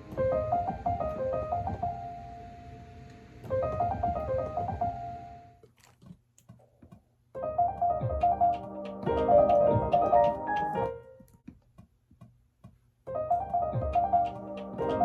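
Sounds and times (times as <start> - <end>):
keyboard playing melodic phrase: 7.4 - 11.1, 13.1 - 15.0.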